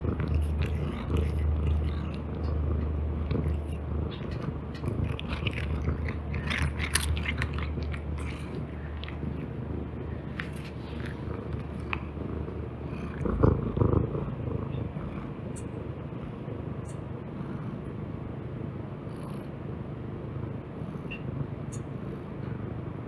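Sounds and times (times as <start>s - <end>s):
cat purring: 0.0s - 23.0s
cat crunching dry treats: 0.1s - 14.3s.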